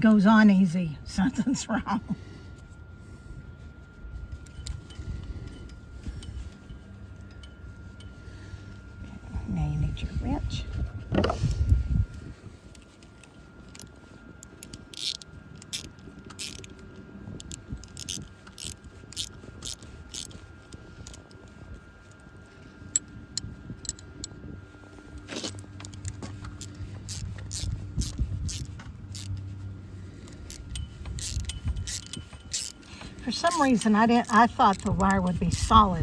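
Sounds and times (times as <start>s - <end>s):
metal hardware clinking and scraping: 30.2s - 36.0s.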